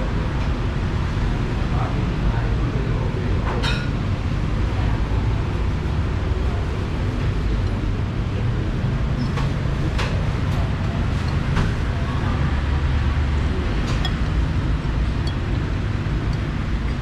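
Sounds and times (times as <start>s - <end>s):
steady low rumble: 4.4s - 17.0s
light clinks: 13.9s - 17.0s.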